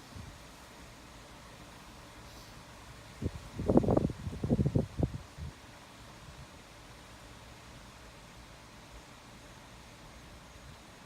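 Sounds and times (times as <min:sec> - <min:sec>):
wind blowing on microphone: 0:03.2 - 0:05.6.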